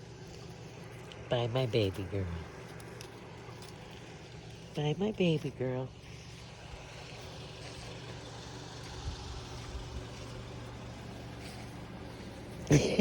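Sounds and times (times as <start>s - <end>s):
vehicle engine humming: 0.0s - 13.0s.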